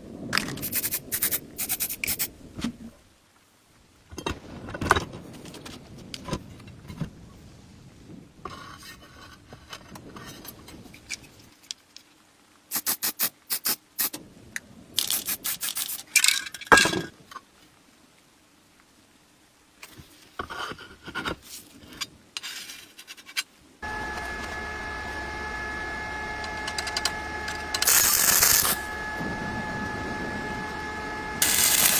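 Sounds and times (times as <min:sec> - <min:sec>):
scraping on metal parts: 0:19.8 - 0:24.6, 0:31.4 - 0:31.9.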